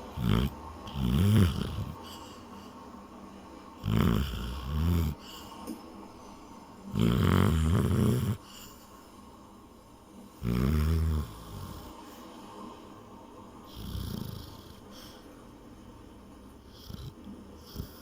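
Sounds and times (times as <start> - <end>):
dog snoring loudly: 0.0 - 2.7, 3.8 - 5.5, 6.9 - 8.7, 10.4 - 12.1, 13.7 - 15.2, 16.6 - 18.0.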